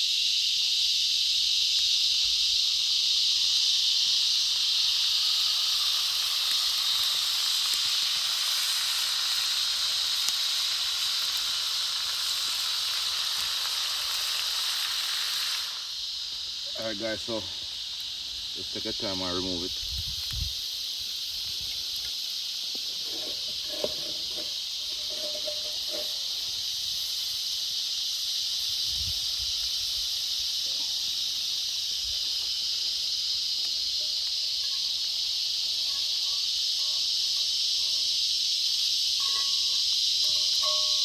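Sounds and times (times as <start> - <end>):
fish sizzling over campfire: 0.0 - 41.0.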